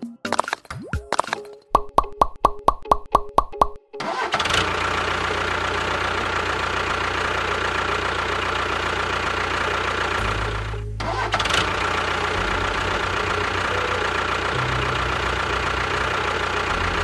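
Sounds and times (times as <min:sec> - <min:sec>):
engine running: 0:04.0 - 0:17.0.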